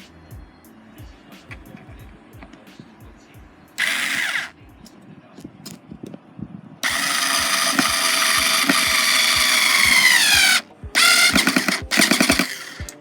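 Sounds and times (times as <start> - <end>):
cordless screwdriver motor whining: 3.8 - 4.5, 6.8 - 13.0
short screwdriver bursts: 3.8 - 4.5, 6.8 - 13.0.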